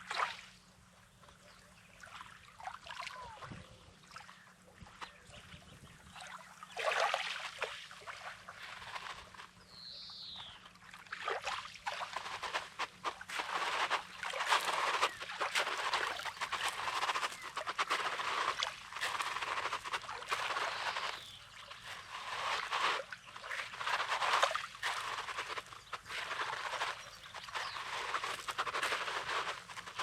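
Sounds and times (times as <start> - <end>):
small waves washing over sand: 11.0 - 30.0.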